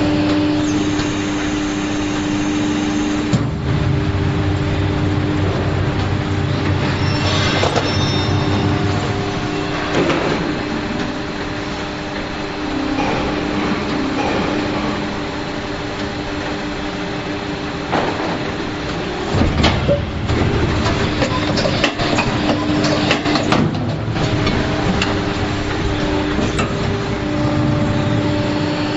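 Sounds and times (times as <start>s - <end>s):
machine hum: 0.0s - 28.9s
machine clunks and clicks: 7.5s - 11.5s, 17.9s - 27.0s.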